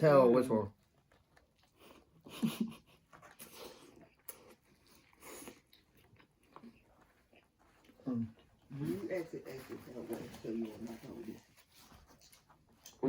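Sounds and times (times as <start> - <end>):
chewing and biting food: 0.8 - 13.0.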